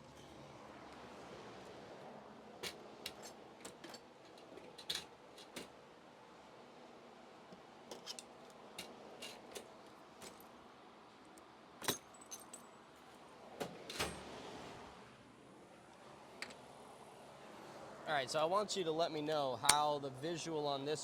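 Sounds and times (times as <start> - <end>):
metal tools clinking: 7.9 - 9.6, 11.8 - 12.7.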